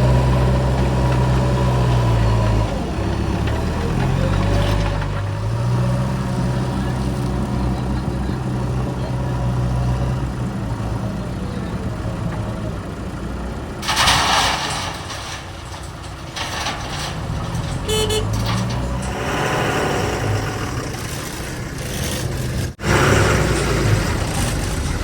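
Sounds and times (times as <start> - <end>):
diesel engines running: 0.0 - 25.0
short horn toot: 17.8 - 18.4.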